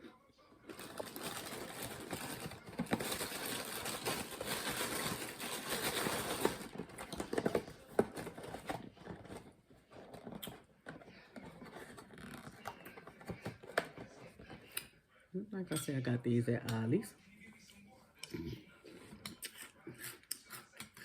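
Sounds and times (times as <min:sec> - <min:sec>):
cereal crunching and chewing: 0:00.7 - 0:07.4.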